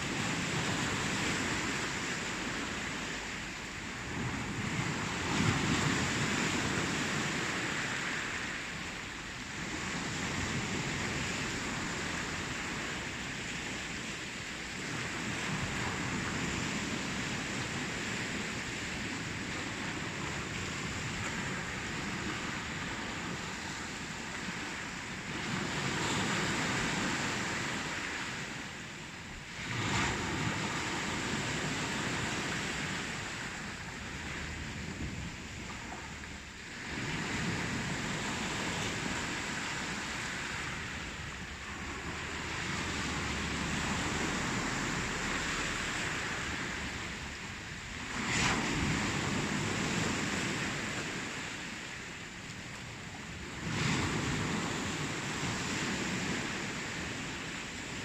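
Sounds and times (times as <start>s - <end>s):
breaking surf: 0.0s - 58.0s
ocean waves washing onto shore: 0.0s - 58.0s.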